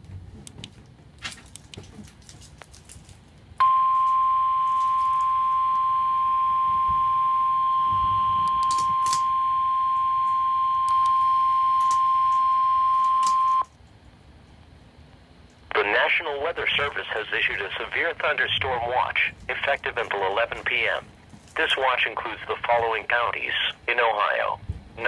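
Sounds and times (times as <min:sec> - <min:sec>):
steady high-pitched alarm beep: 0:03.6 - 0:13.7.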